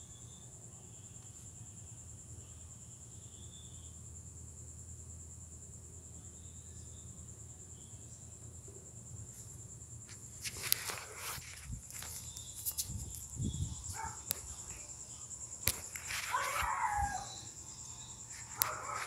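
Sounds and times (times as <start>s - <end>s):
insect trilling: 10.0s - 19.0s
rustles and clicks: 10.1s - 15.0s, 15.6s - 17.2s.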